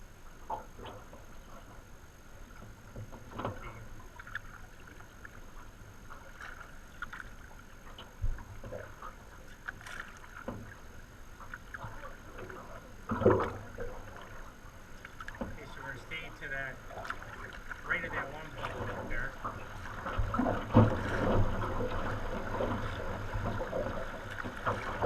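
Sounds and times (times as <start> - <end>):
paddle splashes and drips: 0.2 - 25.0.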